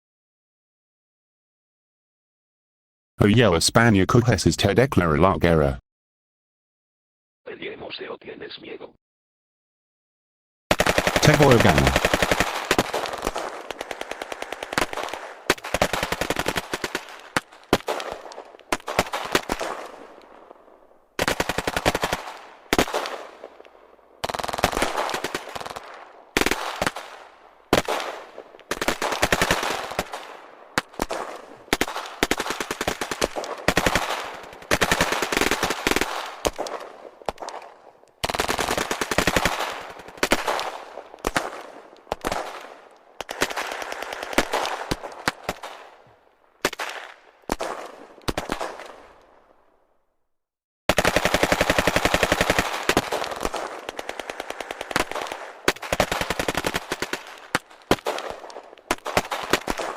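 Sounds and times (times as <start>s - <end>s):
machine-gun fire bursts: 10.7s - 20.0s, 21.2s - 23.4s, 24.2s - 37.5s, 38.2s - 42.7s, 50.9s - 59.9s.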